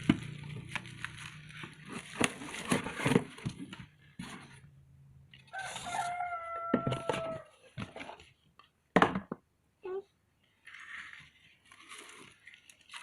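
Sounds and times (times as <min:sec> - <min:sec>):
packaging clicks and rustles: 0:00.0 - 0:04.2.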